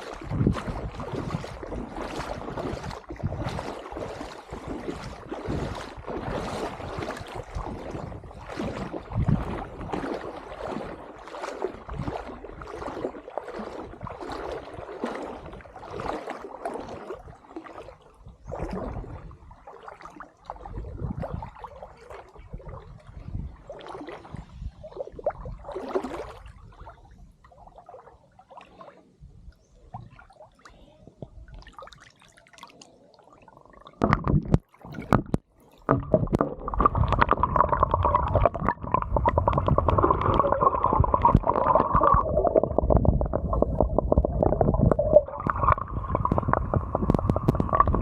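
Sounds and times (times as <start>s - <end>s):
wind buffeting microphone: 0.0s - 11.0s, 20.7s - 21.6s, 22.4s - 25.6s, 36.0s - 48.0s.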